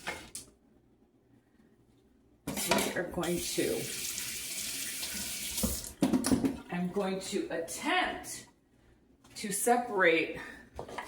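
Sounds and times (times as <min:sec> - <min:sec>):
dishes and utensils clinking: 0:02.5 - 0:03.0
kitchen faucet running: 0:02.6 - 0:06.0.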